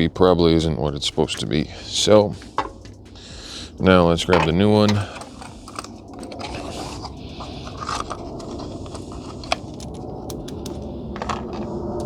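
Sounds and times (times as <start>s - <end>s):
steady low background noise: 0.0s - 12.0s
plastic clicks and rattles: 4.3s - 12.0s.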